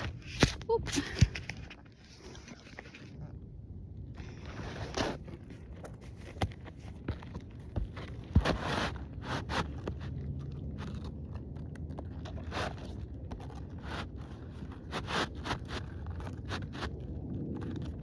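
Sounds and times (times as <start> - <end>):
roof shingles scraping and crunching: 4.2 - 10.2.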